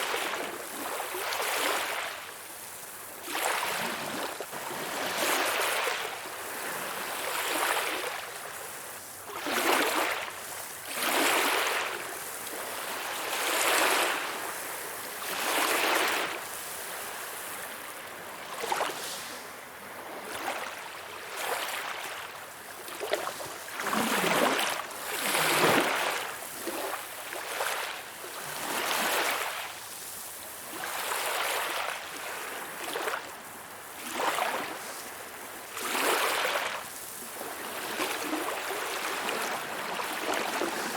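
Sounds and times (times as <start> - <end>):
small waves splashing: 0.0 - 40.9.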